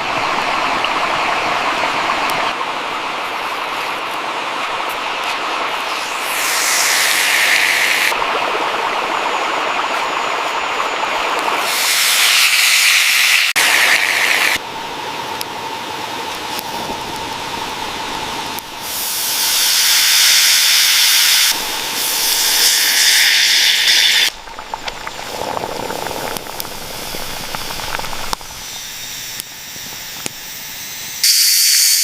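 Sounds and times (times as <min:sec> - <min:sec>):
fish frying with sizzling hiss: 0:03.0 - 0:08.6, 0:10.0 - 0:32.0.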